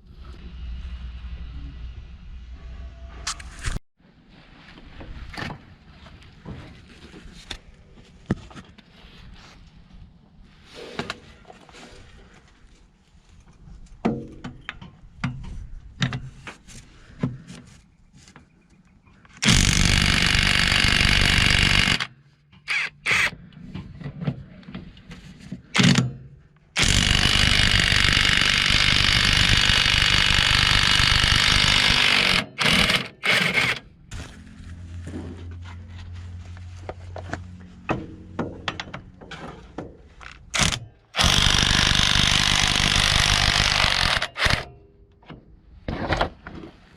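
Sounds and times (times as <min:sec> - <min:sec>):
impact wrench hammering: 0:26.8 - 0:33.8, 0:40.6 - 0:44.7.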